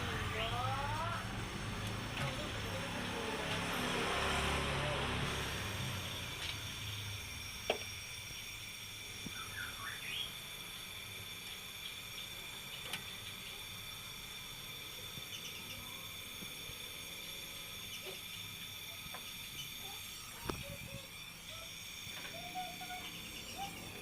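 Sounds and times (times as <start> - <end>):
high insect drone: 0.0 - 24.0
bird chirping: 9.3 - 10.4, 15.2 - 16.0, 22.3 - 24.0.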